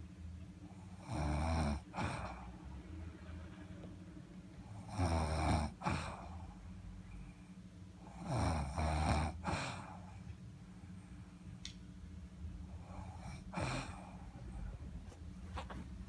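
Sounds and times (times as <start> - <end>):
person snoring: 1.0 - 2.5, 4.8 - 6.5, 8.0 - 10.0, 12.8 - 14.3.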